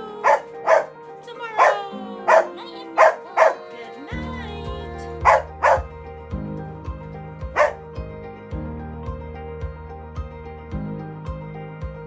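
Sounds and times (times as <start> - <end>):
dog barking: 0.0 - 1.0, 1.6 - 3.7, 5.2 - 5.9, 7.6 - 7.8
background music with bass line: 4.2 - 12.0.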